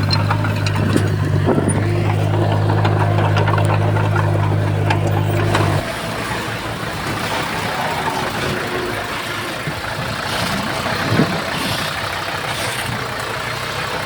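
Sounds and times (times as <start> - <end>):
clanks and ticks: 0.0 - 14.0
heavy diesel engines running: 0.0 - 14.0.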